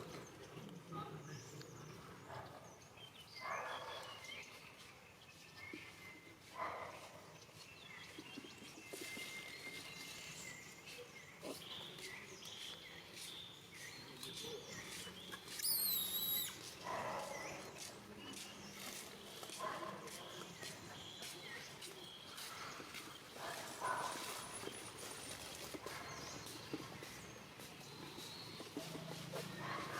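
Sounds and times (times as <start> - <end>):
faint chirps: 11.8 - 16.7.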